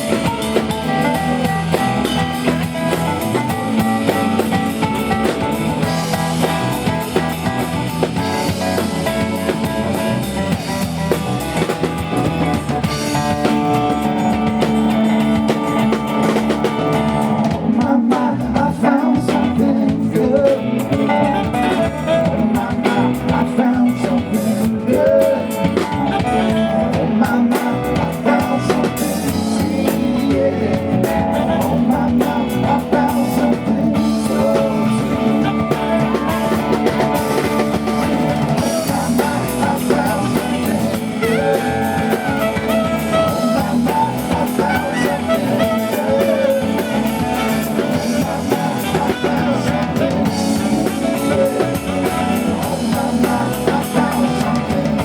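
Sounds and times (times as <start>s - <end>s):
saxophone melody: 0.0s - 17.5s, 21.0s - 23.1s, 25.9s - 27.2s, 34.0s - 52.9s
live band playing: 0.0s - 55.0s.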